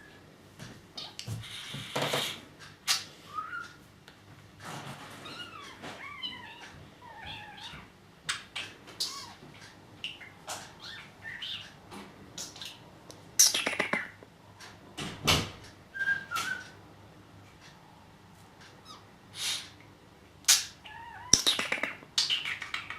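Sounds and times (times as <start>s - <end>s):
budgerigar chirping: 10.1s - 11.8s, 13.4s - 14.2s, 20.5s - 22.9s
rasping squawk: 20.5s - 22.9s.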